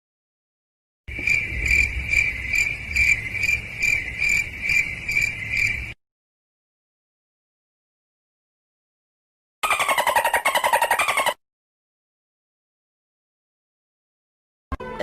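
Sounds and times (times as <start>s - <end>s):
cricket chirping: 1.1s - 6.0s.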